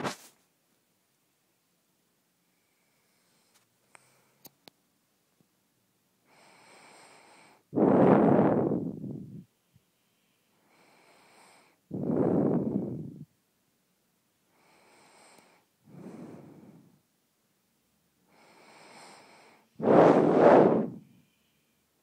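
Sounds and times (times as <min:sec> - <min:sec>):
hissy whistling breath: 0:06.3 - 0:13.3, 0:14.6 - 0:17.0, 0:18.3 - 0:21.9.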